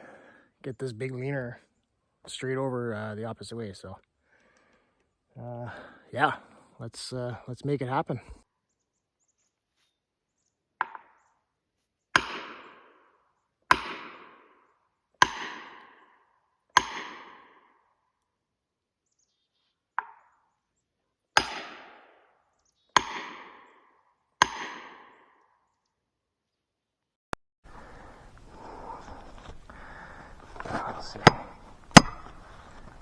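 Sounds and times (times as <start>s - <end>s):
hammer striking steel wedge: 12.2s - 12.7s, 13.7s - 14.3s, 15.2s - 15.8s, 16.8s - 17.4s, 21.4s - 21.8s, 23.0s - 23.6s, 24.4s - 25.1s, 30.5s - 32.9s.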